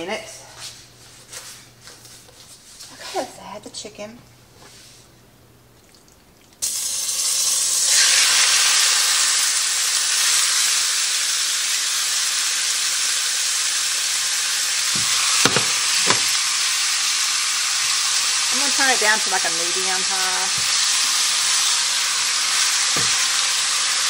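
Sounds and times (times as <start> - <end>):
chicken sizzling in a skillet: 6.6 - 24.0.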